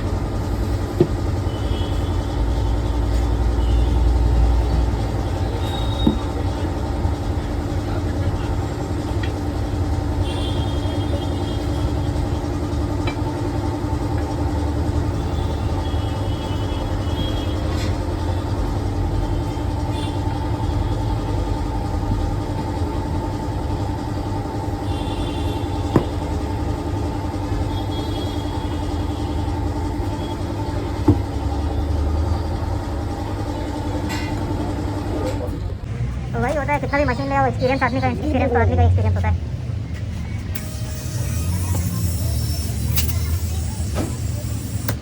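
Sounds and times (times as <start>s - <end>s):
machine humming: 40.5s - 45.0s
sharp clicks: 40.6s - 45.0s.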